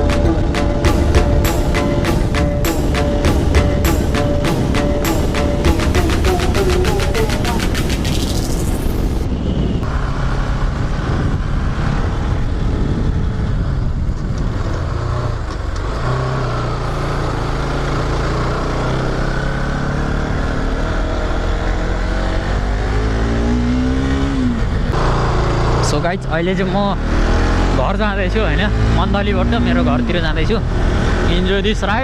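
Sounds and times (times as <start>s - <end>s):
motorcycle engine running: 0.0s - 8.8s.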